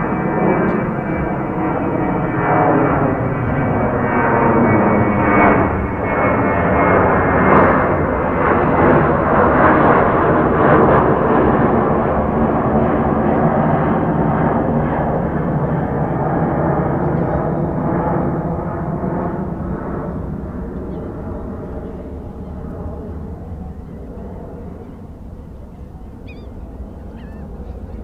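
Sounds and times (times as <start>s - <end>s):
jet engines roaring with crackle: 0.0s - 28.0s.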